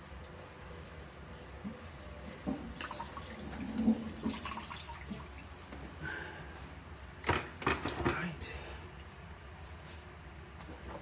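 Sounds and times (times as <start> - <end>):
water dripping and splashing: 2.6 - 5.7.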